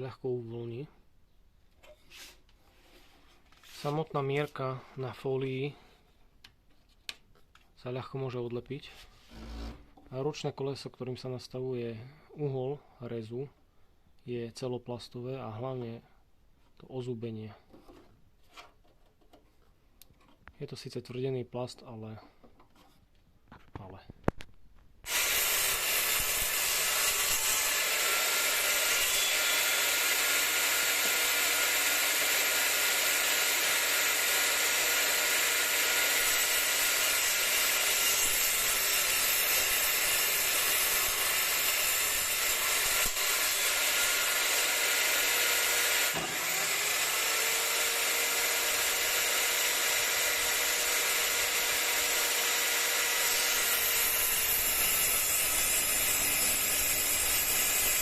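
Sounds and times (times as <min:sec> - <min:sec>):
table saw whirring: 0:25.1 - 0:58.0.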